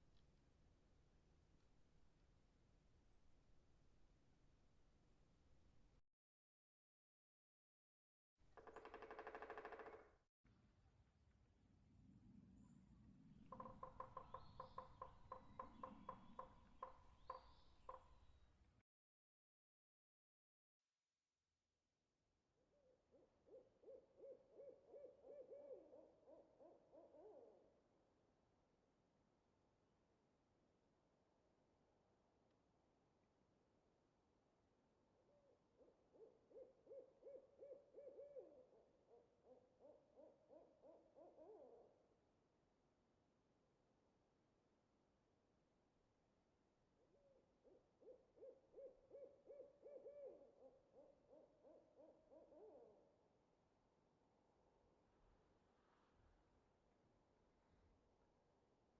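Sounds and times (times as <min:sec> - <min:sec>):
faint low outdoor rumble: 0:10.5 - 0:16.8
owl hooting faintly: 0:13.4 - 0:18.4, 0:22.8 - 0:27.8, 0:35.2 - 0:42.1, 0:47.0 - 0:53.2.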